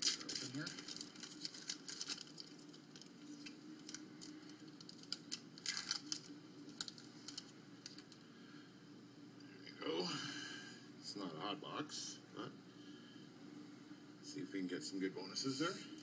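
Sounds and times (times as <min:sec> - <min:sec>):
wrapper crinkling and tearing: 0:00.0 - 0:08.2.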